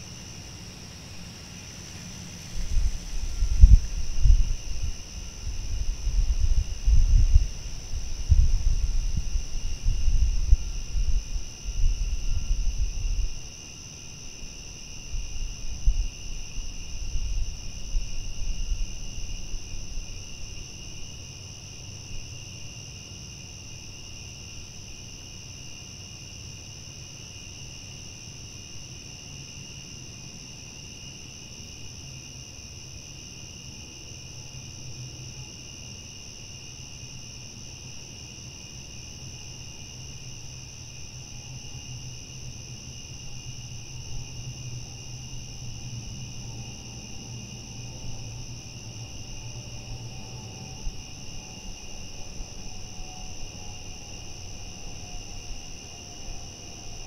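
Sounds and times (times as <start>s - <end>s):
crickets chirping: 0.0s - 57.0s
low rumbling gusts: 2.4s - 21.1s.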